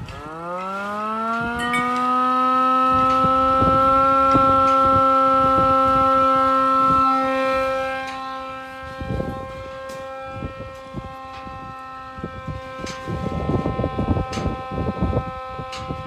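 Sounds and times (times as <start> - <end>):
siren steady tone: 0.0 - 16.0
wind buffeting microphone: 0.0 - 16.0.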